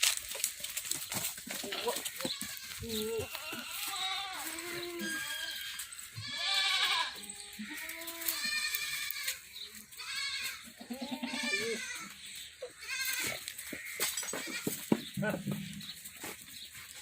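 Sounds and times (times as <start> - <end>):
goats bleating: 1.5 - 15.4.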